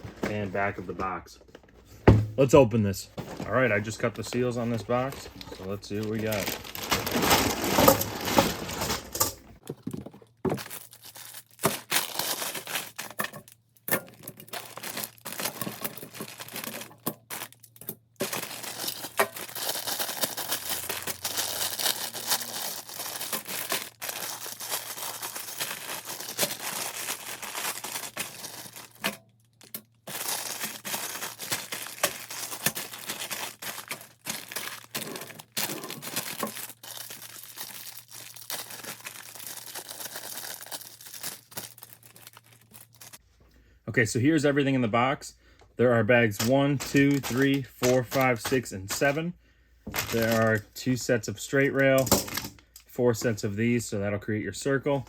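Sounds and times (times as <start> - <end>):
plastic bags crinkling: 3.2 - 43.2, 46.2 - 49.2, 49.8 - 50.7.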